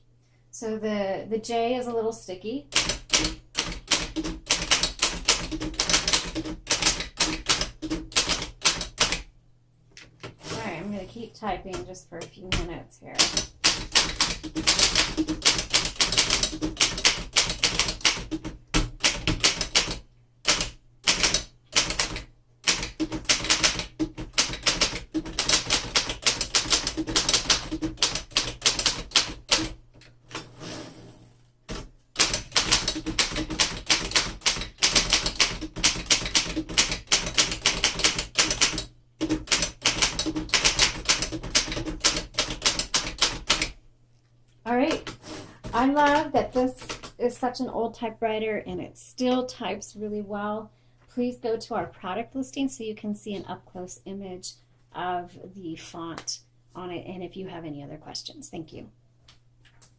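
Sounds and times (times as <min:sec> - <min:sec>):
typewriter keystroke clacks: 0:02.8 - 0:09.2, 0:12.5 - 0:29.8, 0:31.7 - 0:43.8.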